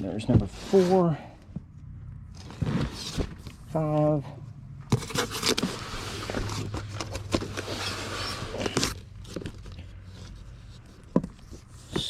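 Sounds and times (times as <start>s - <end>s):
low steady hum: 0.0s - 12.0s
paper rustling and sliding: 4.9s - 10.9s.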